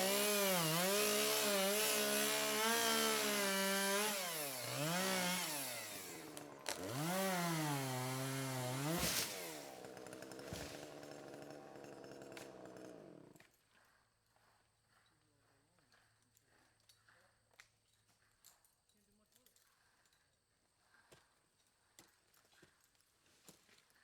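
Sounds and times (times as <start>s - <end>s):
chainsaw cutting wood: 0.0s - 13.5s.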